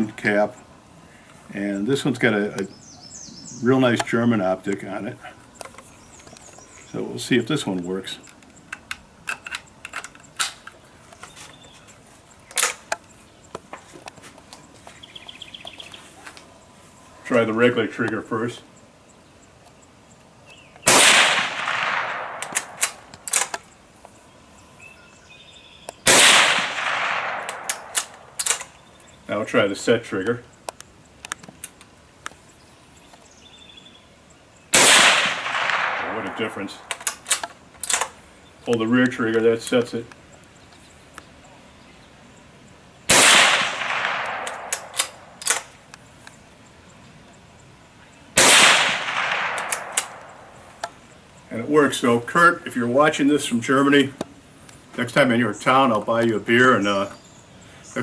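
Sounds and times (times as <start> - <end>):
metallic clicks of rifle action: 7.7 - 11.4, 12.4 - 14.6, 21.5 - 24.1, 25.8 - 29.1, 30.6 - 32.4, 35.4 - 39.2, 43.3 - 46.4, 48.7 - 51.0
rifle shots with echo: 20.8 - 23.6, 26.0 - 28.7, 34.7 - 38.2, 43.1 - 45.8, 48.4 - 50.6.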